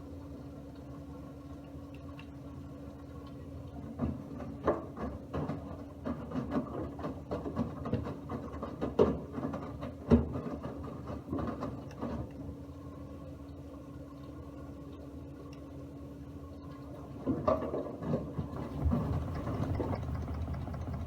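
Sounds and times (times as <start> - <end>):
steady low hum: 18.5 - 21.0.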